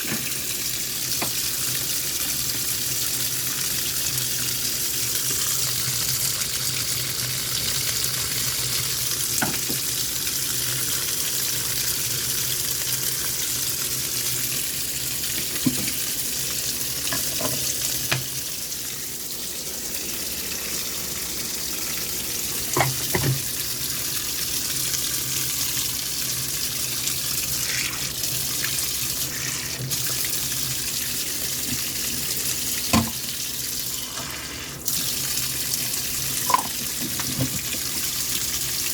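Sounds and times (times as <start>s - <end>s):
water rushing into drum: 27.5s - 35.6s.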